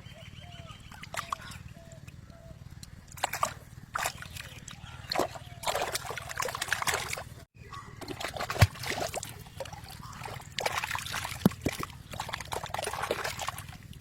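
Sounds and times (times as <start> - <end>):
water sloshing and splashing: 0.8 - 14.0.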